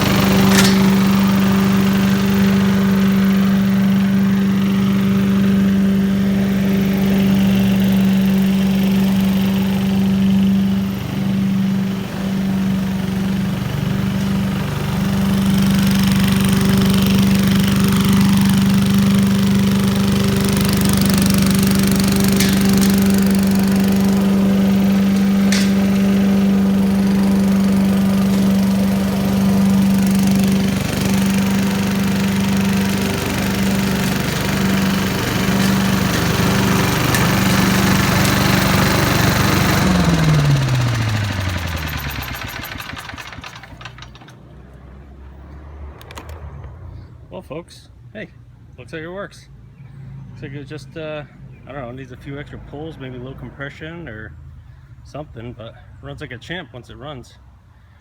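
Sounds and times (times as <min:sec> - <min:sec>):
small engine running steadily: 0:00.0 - 0:44.4.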